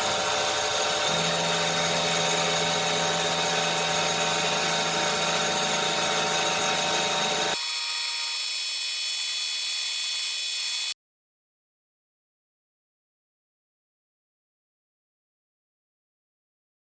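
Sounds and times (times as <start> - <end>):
higher-pitched tool sound: 0.0 - 11.0
power tool whining: 0.0 - 11.0.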